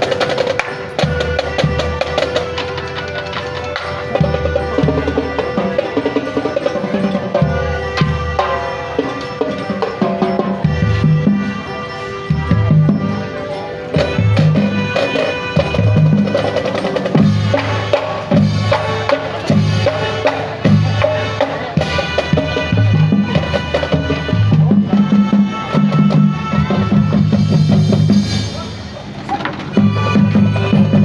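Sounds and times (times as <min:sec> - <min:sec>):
sharp percussion clicks: 0:00.0 - 0:26.3
marching band playing: 0:00.0 - 0:31.0
bass and snare drums: 0:14.0 - 0:31.0.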